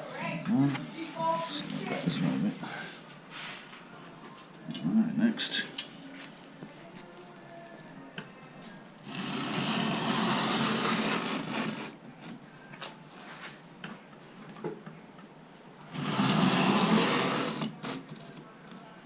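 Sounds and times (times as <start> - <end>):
hand sanding rasping: 9.1 - 12.0, 16.0 - 18.0.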